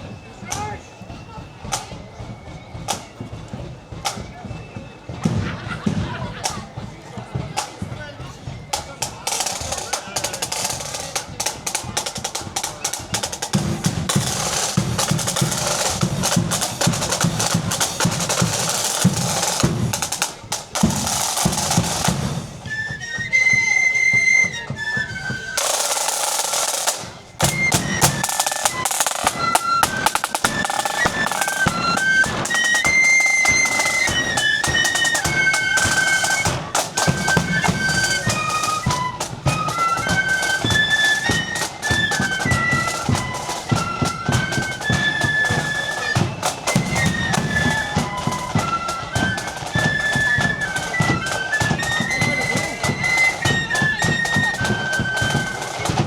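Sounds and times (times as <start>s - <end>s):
marching band playing: 0.0s - 56.0s
snare drum rolls: 0.4s - 56.0s.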